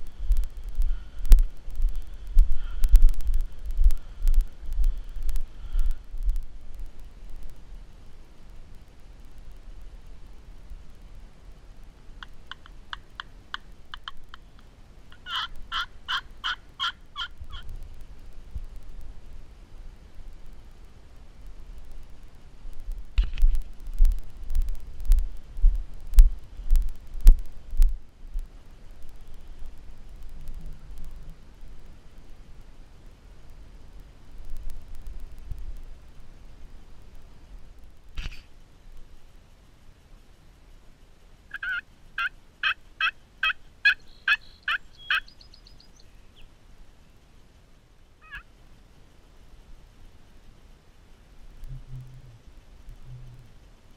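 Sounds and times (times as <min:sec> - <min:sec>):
faint clicks: 0:00.0 - 0:19.4, 0:20.0 - 0:53.9
wild turkey yelping: 0:15.1 - 0:17.7, 0:41.5 - 0:46.5, 0:48.2 - 0:48.5.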